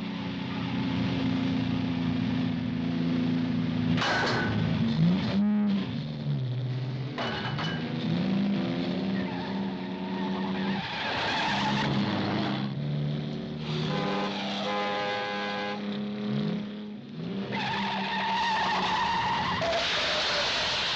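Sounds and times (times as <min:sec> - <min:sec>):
car engine revving: 0:00.0 - 0:20.9
tyres squealing: 0:09.0 - 0:12.3.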